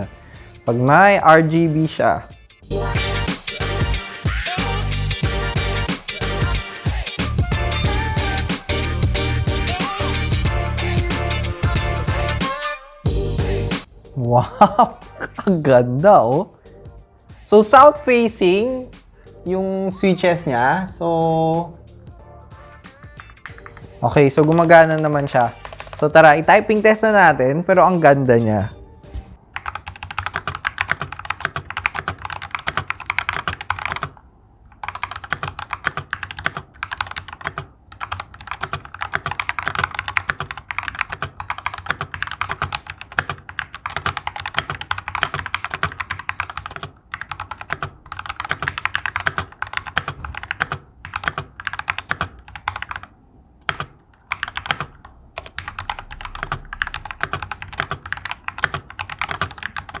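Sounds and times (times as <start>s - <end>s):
mechanical keyboard key clacks: 29.6s - 60.0s.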